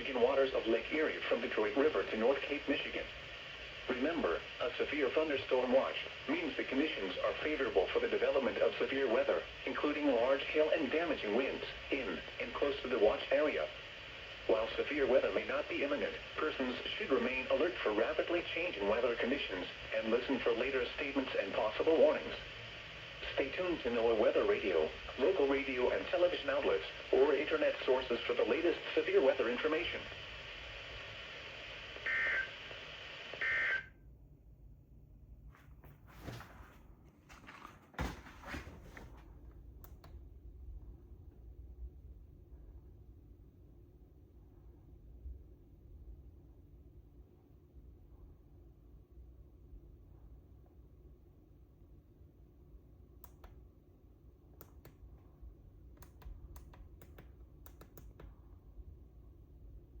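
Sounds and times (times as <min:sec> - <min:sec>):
radio hiss: 0:00.0 - 0:34.0
faint clicks: 0:56.0 - 0:58.4.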